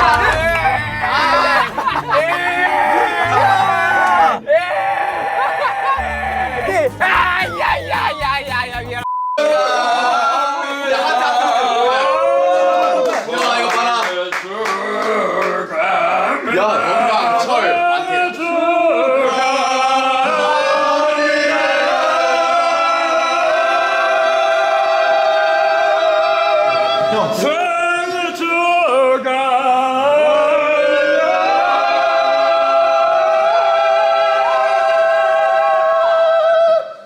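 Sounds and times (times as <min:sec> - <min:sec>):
voices singing long notes: 0:00.0 - 0:09.6.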